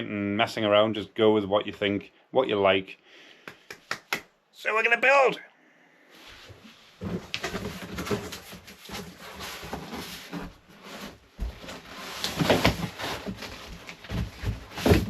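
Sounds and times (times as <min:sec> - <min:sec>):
packaging rustling and scraping: 0:06.6 - 0:15.0.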